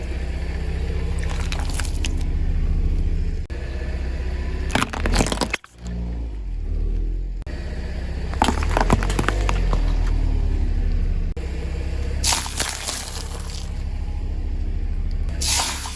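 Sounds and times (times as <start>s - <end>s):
car engine running: 0.0s - 15.9s
objects crunching under wheels: 4.6s - 6.3s, 8.2s - 11.3s.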